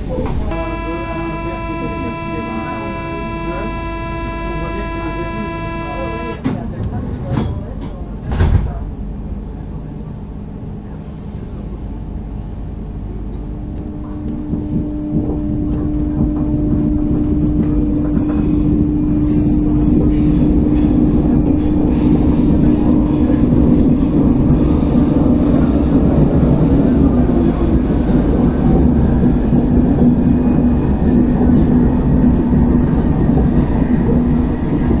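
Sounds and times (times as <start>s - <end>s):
train running gear rumble: 0.0s - 0.6s, 6.4s - 35.0s
traction equipment hum: 0.2s - 6.7s.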